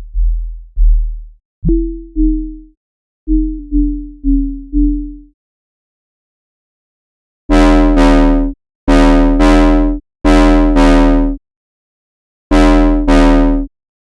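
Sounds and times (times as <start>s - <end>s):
synthesizer bass stabs: 0.0s - 2.7s.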